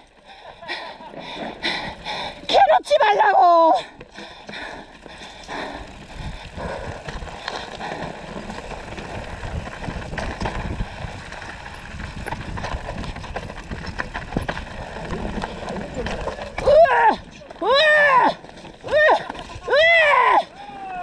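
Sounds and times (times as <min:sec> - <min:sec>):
bike tyre noise: 0:00.0 - 0:21.0
bike clicks and rattles: 0:03.8 - 0:21.0
wind buffeting microphone: 0:05.0 - 0:17.4.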